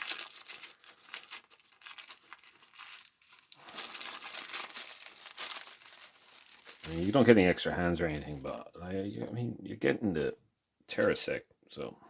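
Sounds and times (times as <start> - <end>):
plastic packaging crackling: 0.0 - 9.3.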